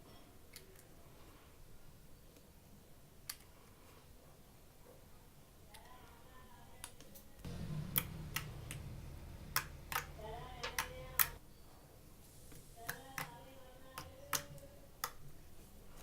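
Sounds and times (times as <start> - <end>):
low hum: 7.5 - 11.4
sharp clicks and pops: 9.5 - 11.4.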